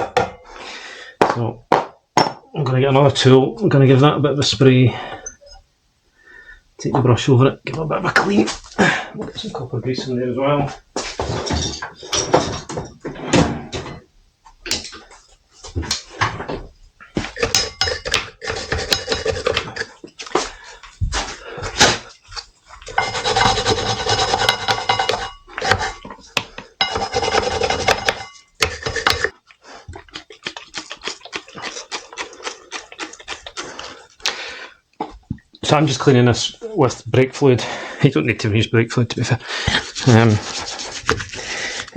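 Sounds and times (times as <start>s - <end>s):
metal tools clinking: 11.3s - 14.0s, 17.3s - 18.2s, 24.4s - 26.1s, 26.8s - 29.3s
rubbing and scrubbing: 17.2s - 34.2s, 39.5s - 41.9s.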